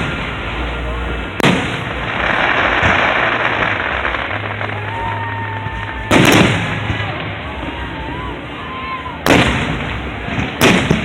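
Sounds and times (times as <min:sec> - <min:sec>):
crackling hiss of fireworks: 0:00.0 - 0:11.0
firework shell bursts: 0:01.4 - 0:07.2.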